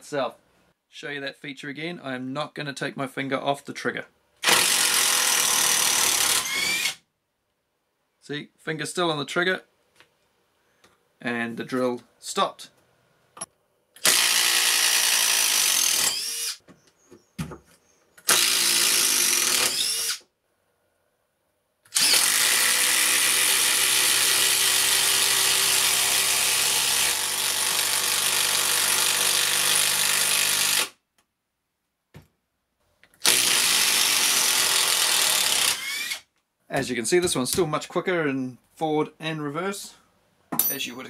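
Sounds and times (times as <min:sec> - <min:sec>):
cordless impact driver running: 0:04.4 - 0:07.0, 0:14.0 - 0:16.6, 0:18.2 - 0:20.2, 0:21.9 - 0:31.0, 0:33.2 - 0:36.2.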